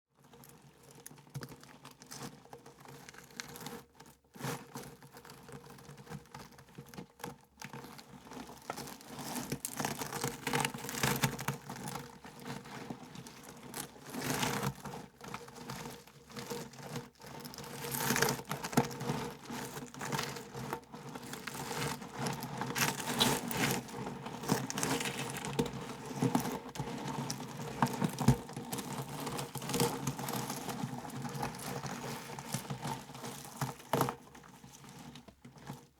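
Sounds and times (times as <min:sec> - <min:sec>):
wheel crunching over stones: 0:19.6 - 0:34.0.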